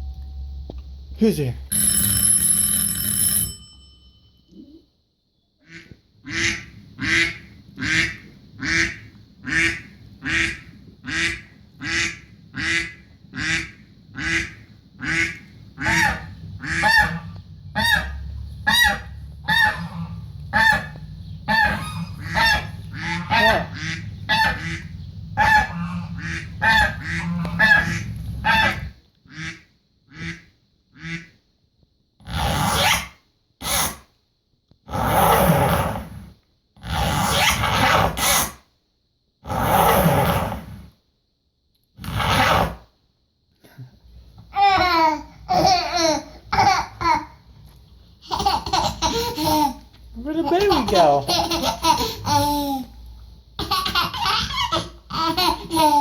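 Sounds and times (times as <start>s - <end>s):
goose honking: 18.7s - 30.4s.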